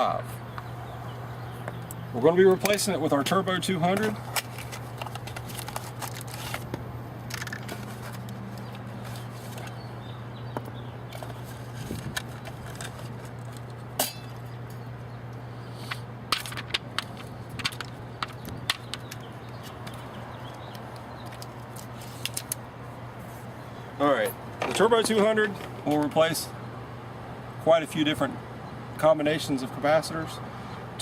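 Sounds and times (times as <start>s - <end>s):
steady low hum: 0.0s - 31.0s
sharp clicks and taps of handling parts: 12.1s - 22.6s.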